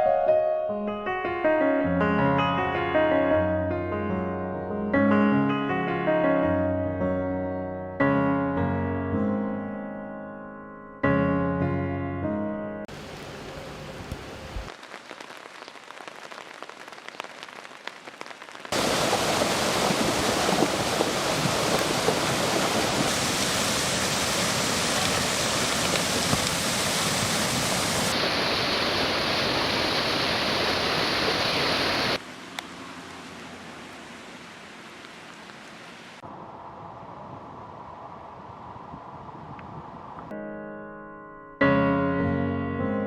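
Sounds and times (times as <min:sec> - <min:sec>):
heavy rain pouring: 0:12.9 - 0:40.2.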